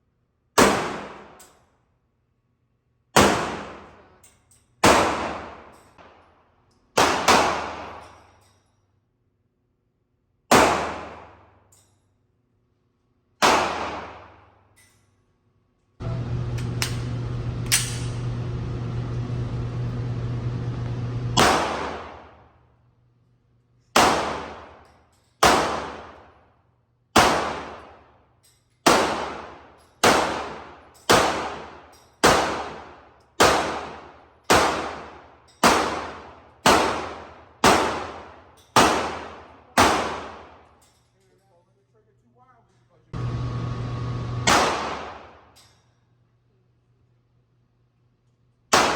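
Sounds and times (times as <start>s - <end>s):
handgun shots ringing out: 4.8s - 6.2s, 6.9s - 8.2s, 10.5s - 11.6s, 13.4s - 14.6s, 21.4s - 22.4s, 23.9s - 26.3s, 27.2s - 28.0s, 28.8s - 40.6s, 44.4s - 45.6s
steady hum: 16.0s - 22.3s, 43.2s - 45.4s.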